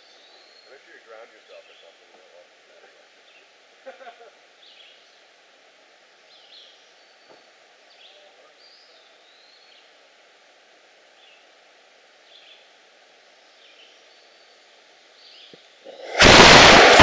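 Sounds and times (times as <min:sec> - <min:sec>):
songbird chirping: 0:00.0 - 0:16.1.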